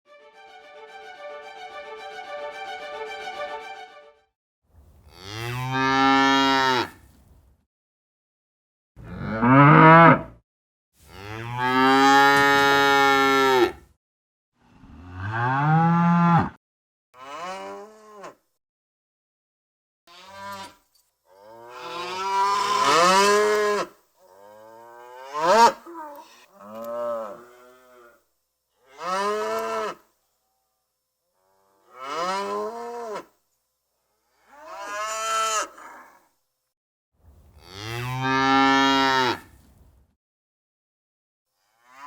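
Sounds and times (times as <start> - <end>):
cows mooing: 37.6 - 39.5.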